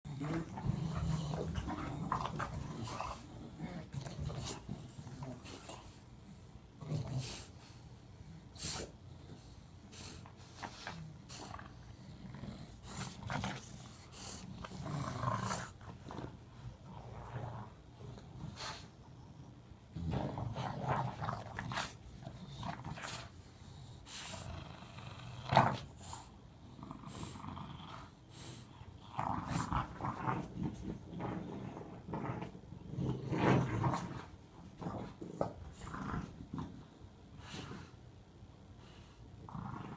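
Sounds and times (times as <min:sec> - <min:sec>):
dogs growling in play: 0:00.0 - 0:38.2, 0:38.8 - 0:39.9.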